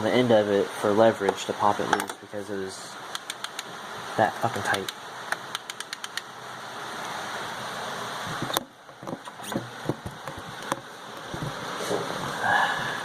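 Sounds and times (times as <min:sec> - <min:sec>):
hand tools clicking and knocking: 0:01.9 - 0:02.2, 0:08.4 - 0:11.6
sharp click: 0:03.1 - 0:03.7, 0:04.7 - 0:06.3.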